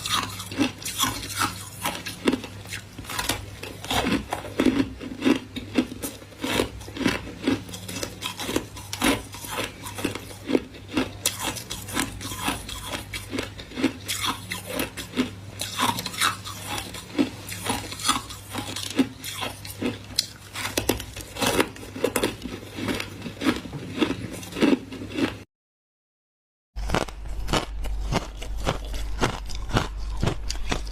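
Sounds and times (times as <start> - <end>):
crunching ice: 0.0 - 25.4, 26.8 - 30.9
steady low hum: 26.8 - 30.9.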